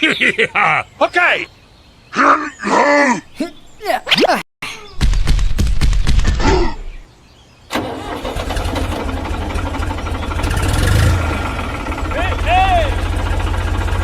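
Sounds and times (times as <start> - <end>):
small engine running: 7.8 - 14.0.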